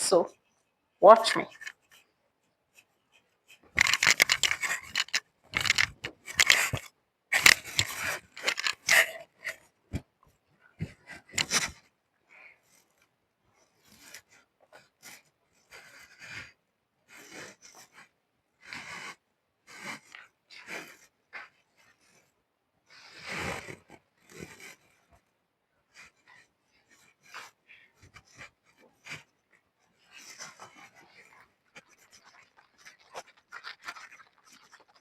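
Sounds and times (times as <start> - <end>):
fabric rustling and rubbing: 1.4 - 9.7, 25.9 - 35.0.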